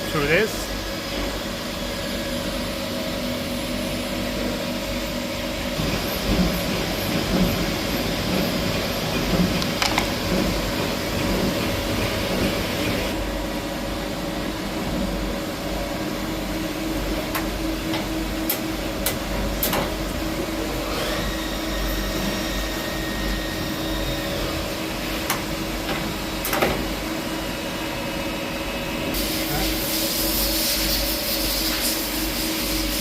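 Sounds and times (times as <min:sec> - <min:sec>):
machines humming: 0:00.0 - 0:29.7
high machine whine: 0:00.0 - 0:33.0
sharp clicks and knocks: 0:09.1 - 0:10.6, 0:17.3 - 0:19.9, 0:25.3 - 0:26.8.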